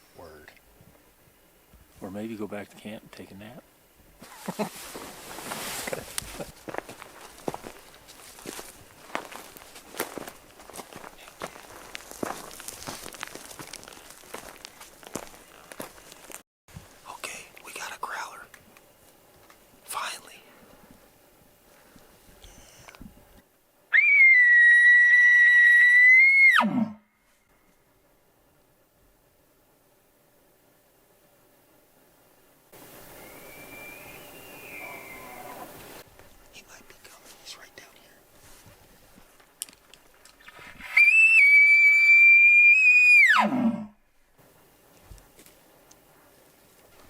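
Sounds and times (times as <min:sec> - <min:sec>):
elk call whistle and growl: 0:23.9 - 0:27.0, 0:33.2 - 0:36.0, 0:40.8 - 0:44.0
elk bugling: 0:33.1 - 0:36.0.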